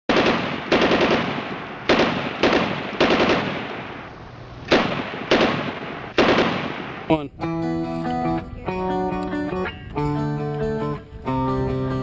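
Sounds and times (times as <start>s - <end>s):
automatic gunfire bursts: 0.1s - 3.8s, 4.7s - 6.9s.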